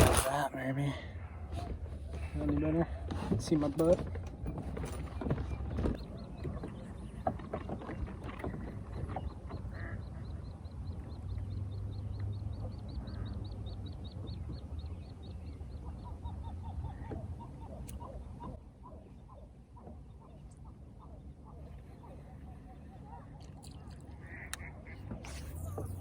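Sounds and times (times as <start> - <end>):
low steady hum: 0.0 - 26.0
bird chirping: 8.4 - 26.0.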